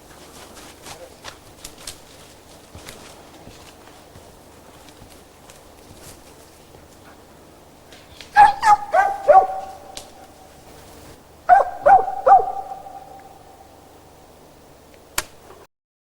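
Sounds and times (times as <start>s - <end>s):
dog barking with echo: 8.3s - 10.6s, 11.5s - 13.9s.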